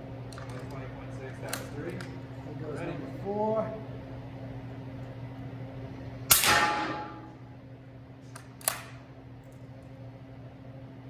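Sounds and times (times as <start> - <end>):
small sharp crack: 6.3 - 7.3.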